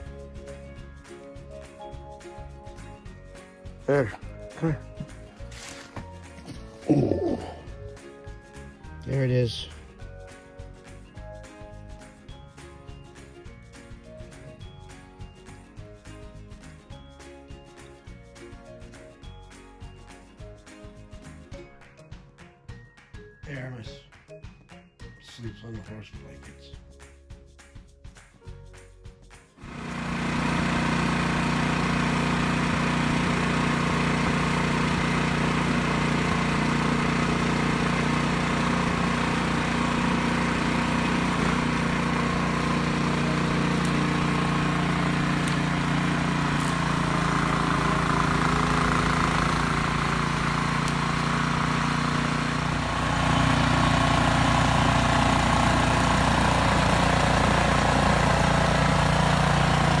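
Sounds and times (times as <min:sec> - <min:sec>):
engine idling: 0:01.4 - 0:07.9, 0:08.9 - 0:09.8, 0:29.6 - 1:00.0.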